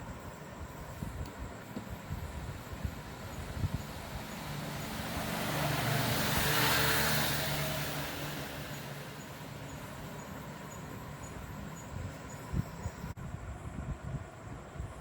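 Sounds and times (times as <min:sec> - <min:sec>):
road vehicle passing by: 0:02.4 - 0:13.1.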